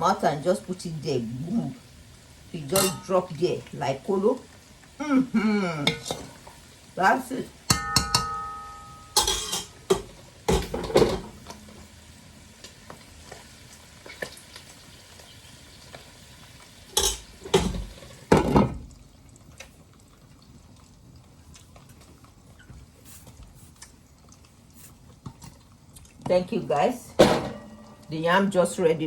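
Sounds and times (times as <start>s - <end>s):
food sizzling in hot oil: 0.0s - 21.2s, 24.8s - 29.0s
utensil scraping and knocking pan: 7.7s - 11.6s.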